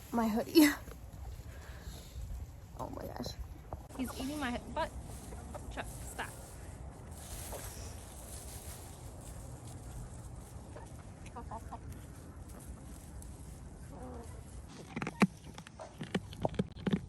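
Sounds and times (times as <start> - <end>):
steady low rumble: 0.0 - 14.7
chicken clucking: 10.6 - 14.9.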